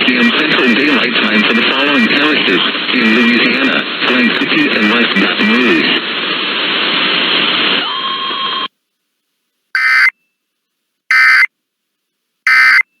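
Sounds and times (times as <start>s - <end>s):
radio hiss: 0.0s - 7.8s.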